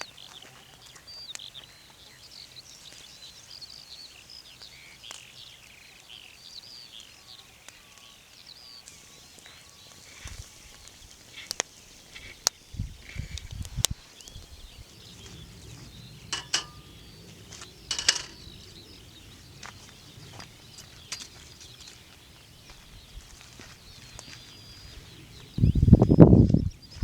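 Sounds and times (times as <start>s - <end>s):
faint birdsong: 0.0s - 27.0s
camp cookware clinking: 16.2s - 17.1s, 17.8s - 18.6s.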